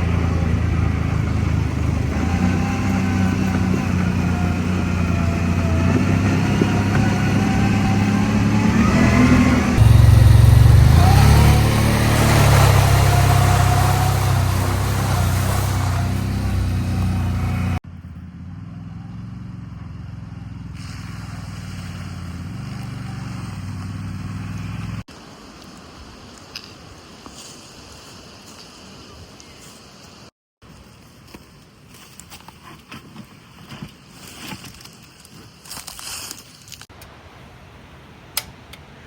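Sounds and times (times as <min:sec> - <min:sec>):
atv engine revving: 0:00.0 - 0:25.1.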